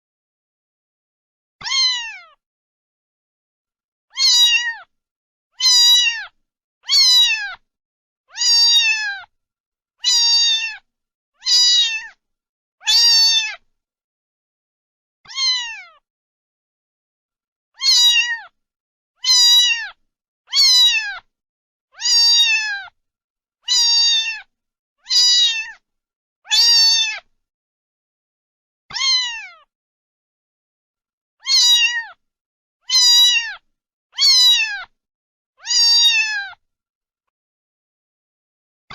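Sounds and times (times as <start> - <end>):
cat meowing: 1.6 - 2.4, 4.1 - 4.9, 5.6 - 7.6, 8.3 - 9.3, 10.0 - 12.2, 12.8 - 13.6, 15.3 - 16.0, 17.8 - 18.6, 19.2 - 21.3, 22.0 - 23.0, 23.6 - 25.8, 26.5 - 27.3, 28.9 - 29.7, 31.4 - 32.2, 32.8 - 35.0, 35.6 - 36.6.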